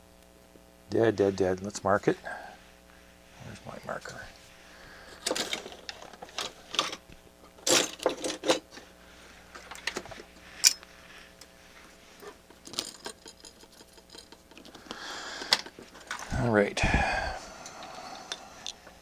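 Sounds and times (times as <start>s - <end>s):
small objects clicking and knocking: 12.5s - 16.3s.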